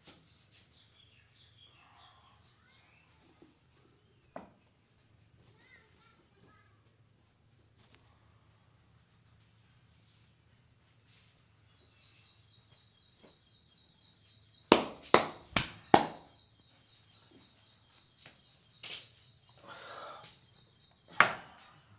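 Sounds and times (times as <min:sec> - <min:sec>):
hand slaps: 0:14.7 - 0:16.3.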